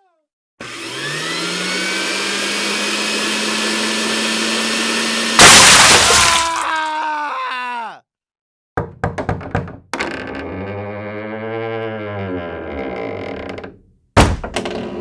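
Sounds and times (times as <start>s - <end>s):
person screaming harshly: 0.0s - 0.2s, 5.4s - 8.1s.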